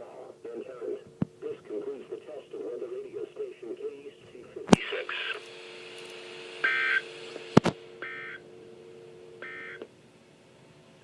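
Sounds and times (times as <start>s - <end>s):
steady low hum: 0.0s - 11.0s
buzzy data tone bursts: 4.7s - 9.8s.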